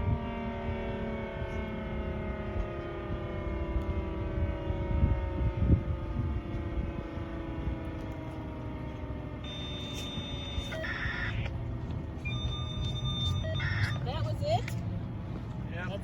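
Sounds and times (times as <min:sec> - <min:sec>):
warning siren winding down: 0:00.0 - 0:14.7
steady low rumble: 0:04.4 - 0:16.0.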